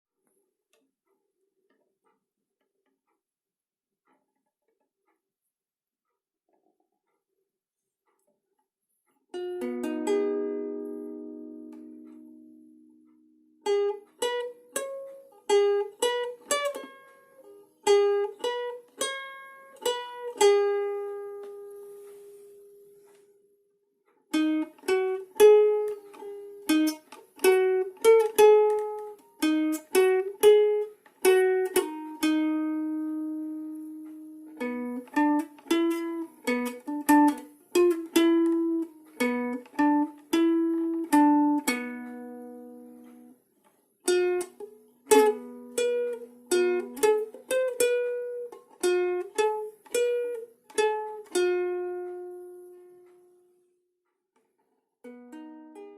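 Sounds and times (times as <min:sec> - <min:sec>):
plucked string instrument melody: 0:09.3 - 0:23.2, 0:24.3 - 0:53.7, 0:55.0 - 0:55.9.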